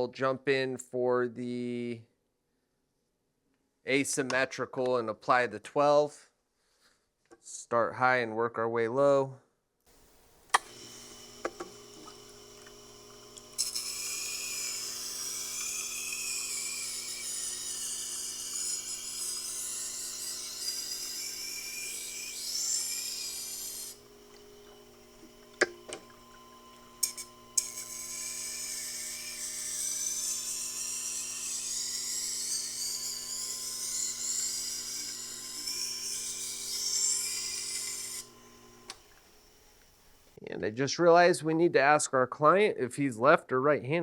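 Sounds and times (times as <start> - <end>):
motor humming: 9.9 - 40.4
wheel grinding knife edge: 10.0 - 40.4.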